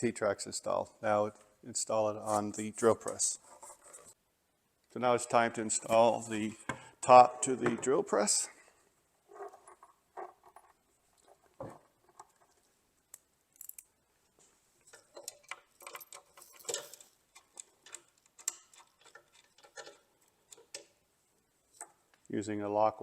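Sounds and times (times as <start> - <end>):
metal hardware clicks and taps: 14.9 - 20.9.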